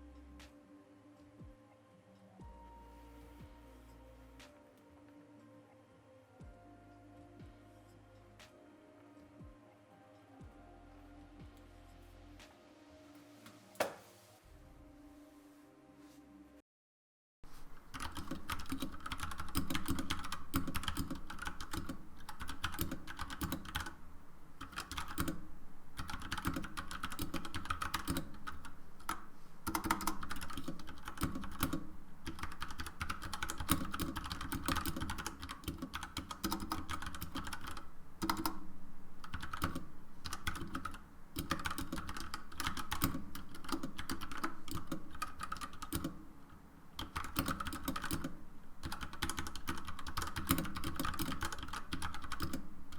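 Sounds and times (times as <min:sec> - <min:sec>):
mechanical keyboard typing: 0:17.6 - 0:24.0, 0:24.6 - 0:25.4, 0:26.0 - 0:46.2, 0:47.0 - 0:52.7.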